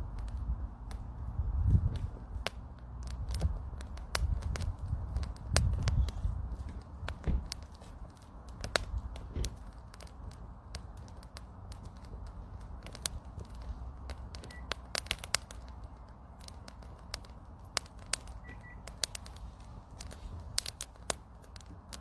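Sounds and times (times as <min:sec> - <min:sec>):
campfire crackling and popping: 0:00.0 - 0:22.0
low steady rumble: 0:00.0 - 0:22.0.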